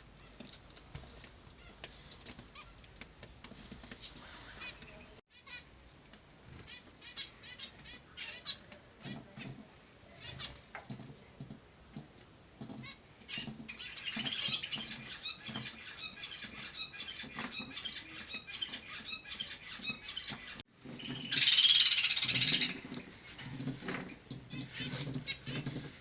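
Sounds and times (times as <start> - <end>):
finch chicks begging calls: 6.5 - 10.6, 12.8 - 23.6.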